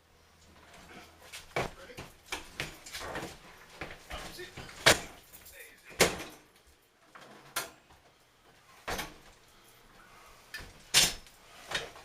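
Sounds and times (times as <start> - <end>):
refrigerator doors and drawers clacking: 5.9 - 6.5, 8.8 - 9.2.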